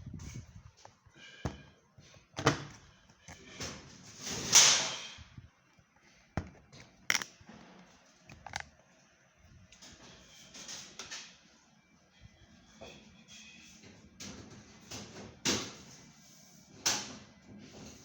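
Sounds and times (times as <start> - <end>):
plastic and metal parts clunking: 6.4 - 8.8.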